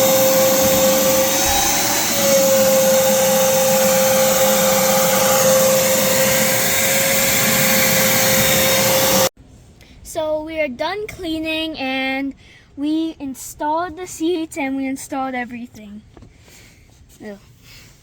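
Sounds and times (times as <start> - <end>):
vacuum cleaner whining: 0.0 - 9.4.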